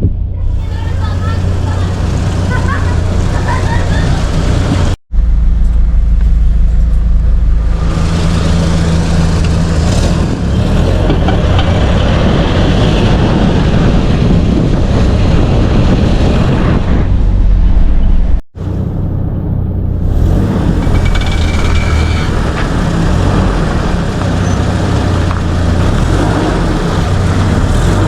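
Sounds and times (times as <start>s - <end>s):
car engine drone: 0.0s - 28.0s
road and wind noise hiss: 7.8s - 19.4s, 22.3s - 28.0s.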